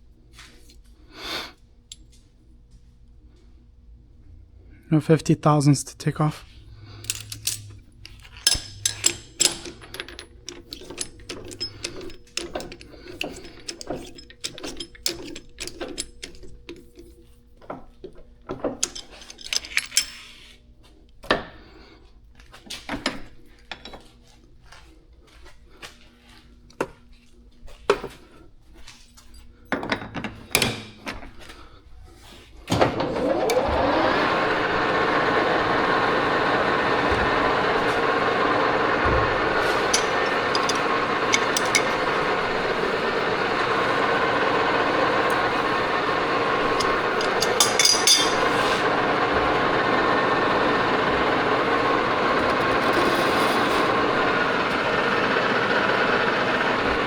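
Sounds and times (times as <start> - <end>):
metal tools clicking and knocking: 7.0 - 17.1, 18.0 - 20.3, 39.3 - 42.8, 45.3 - 48.9
metal lathe whirring: 7.0 - 17.2, 32.9 - 57.0.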